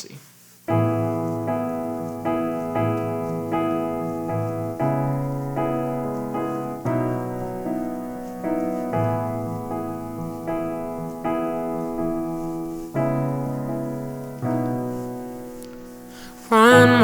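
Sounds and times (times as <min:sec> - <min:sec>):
electronic keyboard piano chords: 0:00.7 - 0:17.0.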